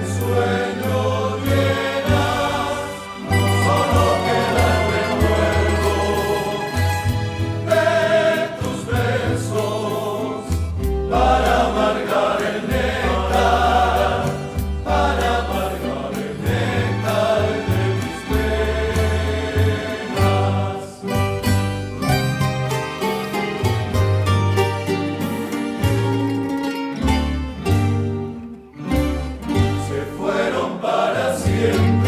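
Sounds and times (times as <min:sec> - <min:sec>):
group of voices singing: 0:00.0 - 0:21.8, 0:29.4 - 0:32.0
steady bass: 0:00.0 - 0:30.6, 0:31.2 - 0:32.0
plucked strings: 0:00.0 - 0:30.7, 0:31.4 - 0:32.0.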